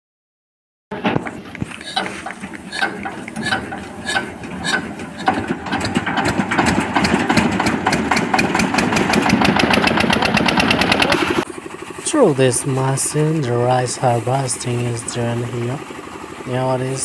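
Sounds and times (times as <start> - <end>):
mechanical clatter: 0.9 - 11.5
harvesting machine engine knocking: 0.9 - 17.0.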